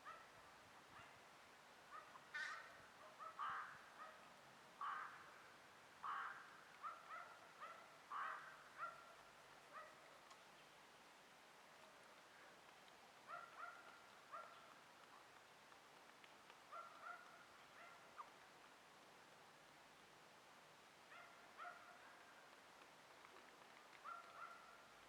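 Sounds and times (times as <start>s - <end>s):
crows cawing: 2.3s - 2.8s, 3.4s - 3.8s, 4.8s - 5.2s, 6.0s - 6.5s, 8.1s - 8.5s.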